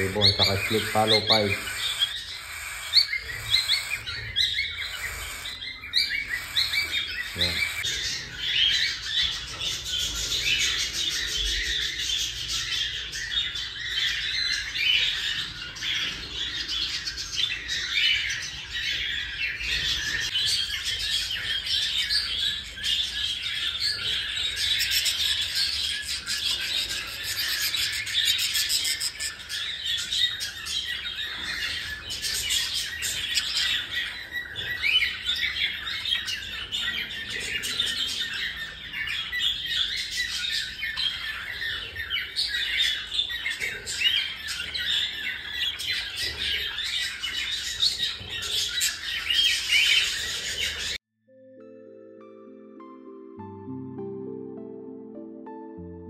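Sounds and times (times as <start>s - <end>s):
baby birds chirping and squawking: 0.0s - 51.0s.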